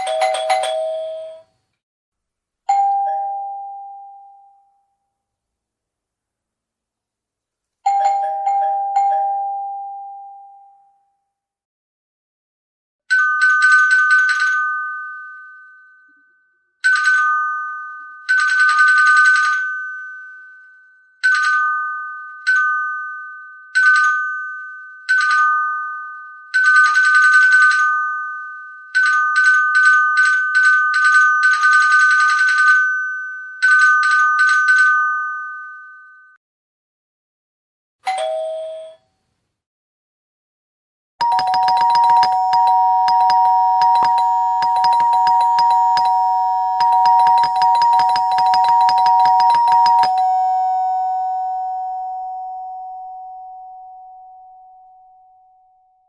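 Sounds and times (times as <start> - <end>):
low two-note doorbell chime: 2.7 - 5.0, 41.2 - 56.0
high two-tone bell ringing: 41.2 - 53.4.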